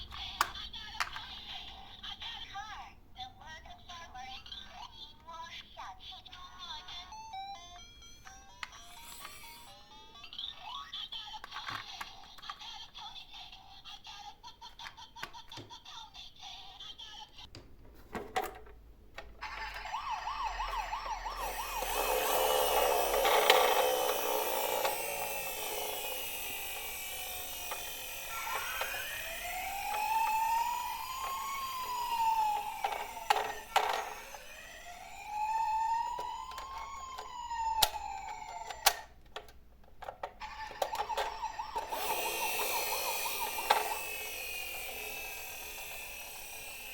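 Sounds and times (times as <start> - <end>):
emergency vehicle siren: 7.1 - 9.7, 19.4 - 39.1, 40.4 - 46.9.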